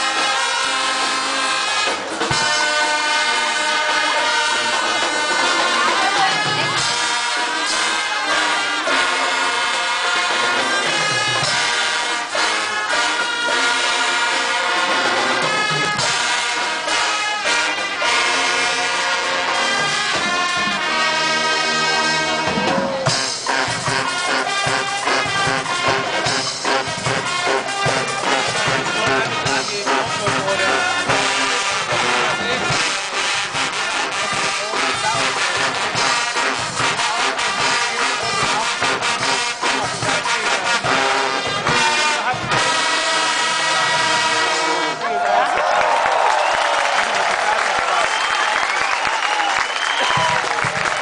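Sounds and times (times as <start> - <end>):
drums: 0.0 - 51.0
trumpets and trombones: 0.0 - 51.0.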